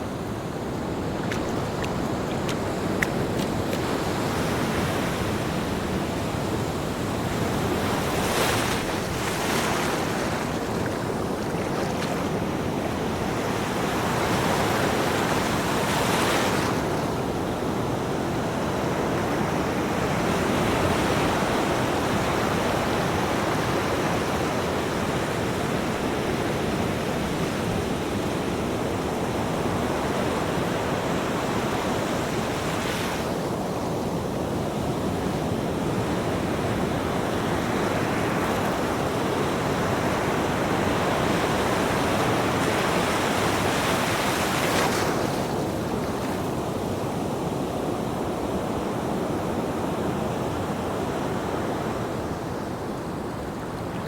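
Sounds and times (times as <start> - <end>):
ocean waves breaking: 0.0 - 23.8, 35.4 - 47.2.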